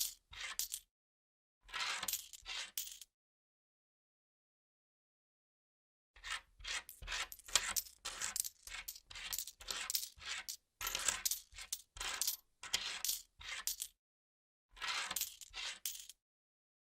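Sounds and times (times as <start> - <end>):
coins clinking: 15.2 - 16.1.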